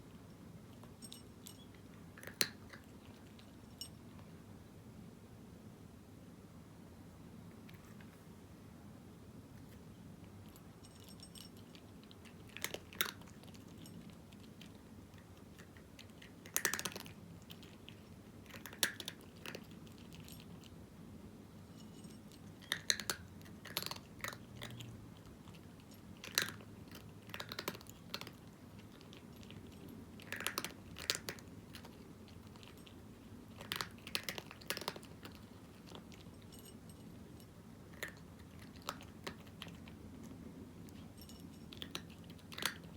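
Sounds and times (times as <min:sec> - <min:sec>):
cat crunching dry kibble: 0:00.1 - 0:04.4, 0:09.6 - 0:20.8, 0:21.6 - 0:42.9.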